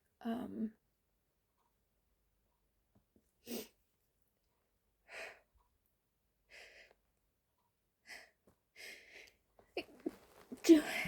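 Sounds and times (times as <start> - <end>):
woman breathing quietly: 8.0 - 9.4.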